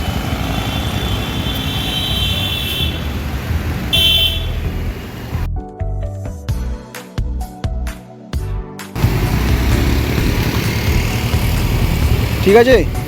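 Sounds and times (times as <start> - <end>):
road traffic rumble: 0.0 - 5.5, 9.0 - 13.0
vehicle horn: 0.5 - 4.9.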